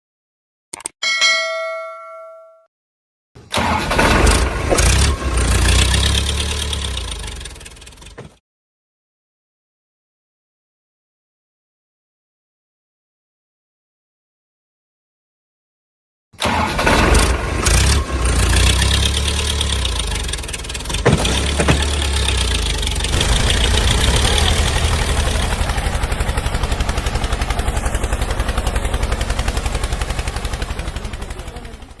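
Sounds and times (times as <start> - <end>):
tractor engine idling: 5.0 - 8.2, 17.3 - 32.0.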